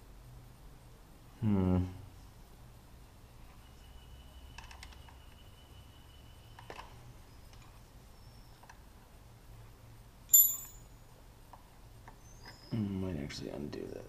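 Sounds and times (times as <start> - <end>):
sharp ringing metal clink: 10.3 - 11.0.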